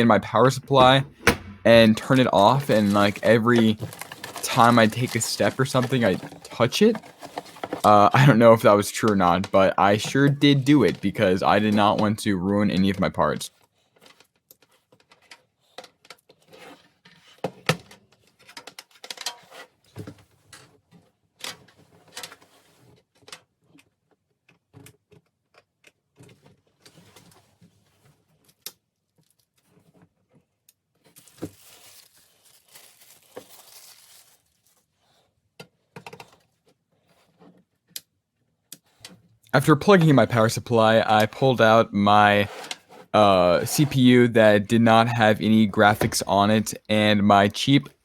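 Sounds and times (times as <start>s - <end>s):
packaging crinkling: 2.0s - 8.0s, 31.2s - 34.8s.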